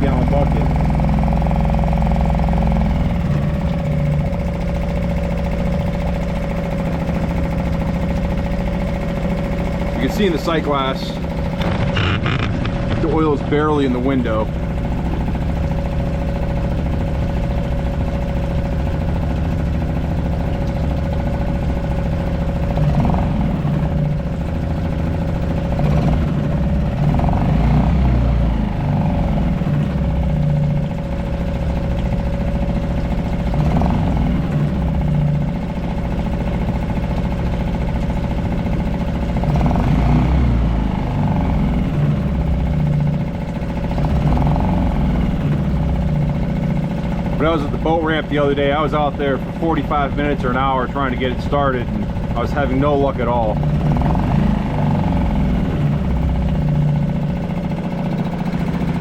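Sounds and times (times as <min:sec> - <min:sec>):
outboard motor running: 0:00.0 - 0:59.0.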